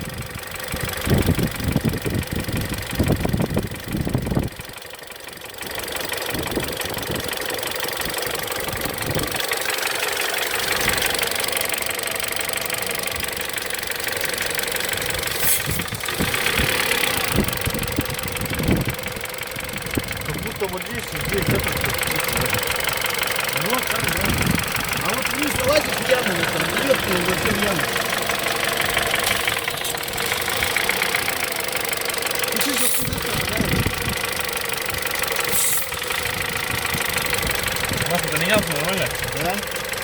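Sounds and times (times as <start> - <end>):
car engine running: 0.0 - 40.0
timing chain tensioner knocking: 15.9 - 40.0.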